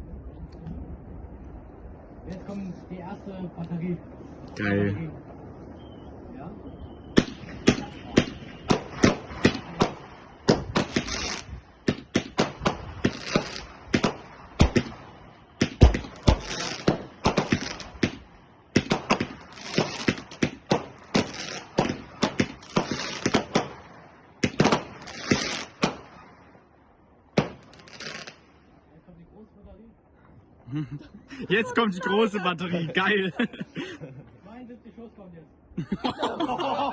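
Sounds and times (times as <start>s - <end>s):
firework battery bangs: 7.1s - 26.4s, 27.3s - 28.6s
hissing crackling firework bursts: 7.2s - 26.3s, 27.4s - 28.6s.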